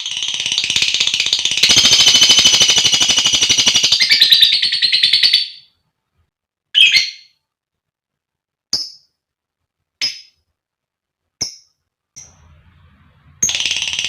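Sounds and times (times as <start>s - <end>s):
lovebird chattering trill: 0.1s - 5.7s, 13.4s - 14.0s
bird chirp: 0.2s - 5.8s, 6.8s - 7.4s, 12.2s - 14.0s.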